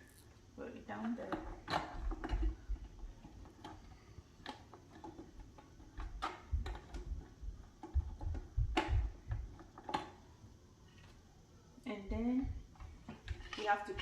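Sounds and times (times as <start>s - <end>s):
plastic parts clicking and tapping: 1.0s - 10.2s
dull low thumps: 6.5s - 9.4s.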